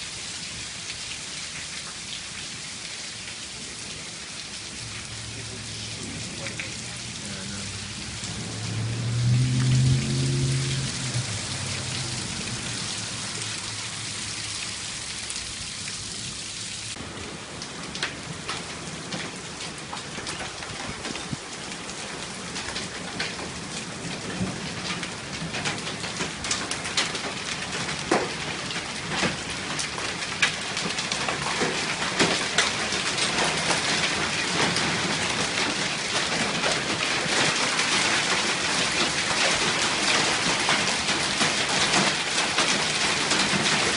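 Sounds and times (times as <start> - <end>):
hail and rain pelting: 0.0 - 43.9
low voice: 5.3 - 7.9.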